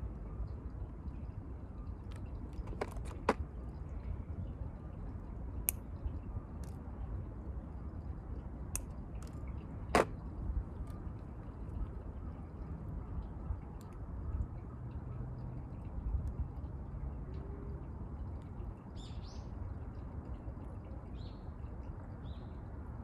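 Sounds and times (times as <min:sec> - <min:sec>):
small tools clicking and tapping: 0:02.1 - 0:03.4.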